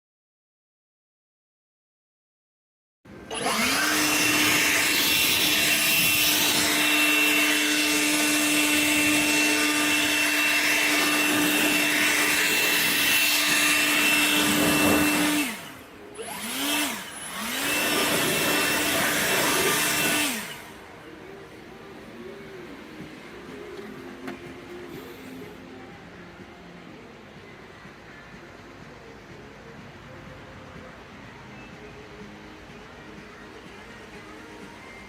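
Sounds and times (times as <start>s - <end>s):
power tool cutting metal: 3.2s - 21.4s.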